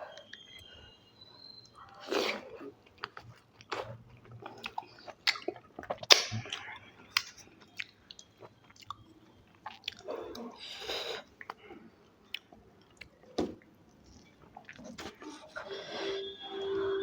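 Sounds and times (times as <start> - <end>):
person chewing crunchy food: 2.0 - 11.6, 14.1 - 15.9.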